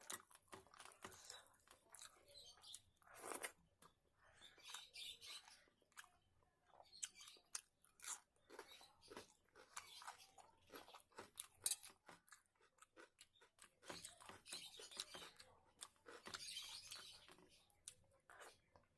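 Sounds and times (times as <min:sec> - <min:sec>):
person chewing and crunching food: 0:00.0 - 0:18.9.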